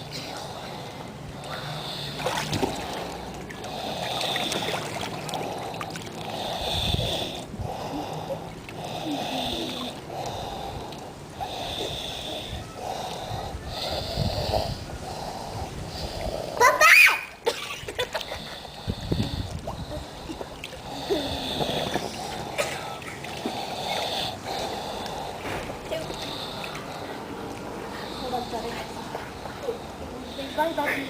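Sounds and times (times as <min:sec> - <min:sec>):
snoring: 0:06.4 - 0:10.8, 0:20.9 - 0:22.6.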